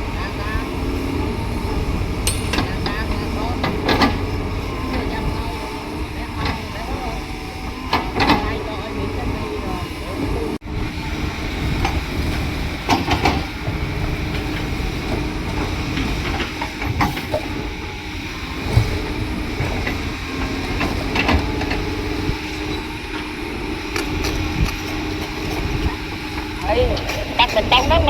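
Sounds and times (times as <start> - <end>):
heavy machine engine running: 0.0 - 28.0
metallic clanks and knocks: 2.3 - 4.2.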